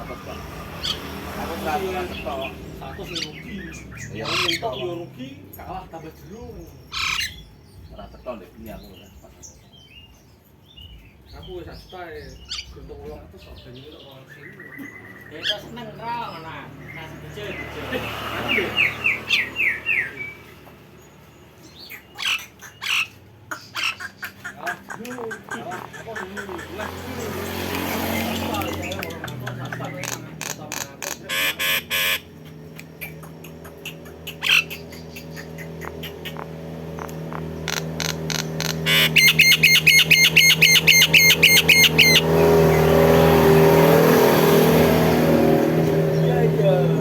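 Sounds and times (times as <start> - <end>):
myna calling: 0.0 - 5.1, 21.9 - 43.8
bird squawking harshly: 2.0 - 4.8, 6.9 - 7.4, 21.9 - 32.4, 33.0 - 36.6, 37.3 - 42.4
motor noise: 30.5 - 46.0.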